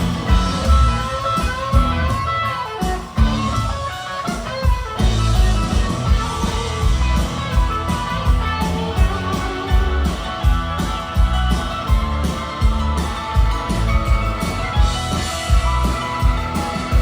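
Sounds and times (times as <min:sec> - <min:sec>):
drum beat: 0:00.0 - 0:17.0
electric guitars: 0:00.0 - 0:17.0.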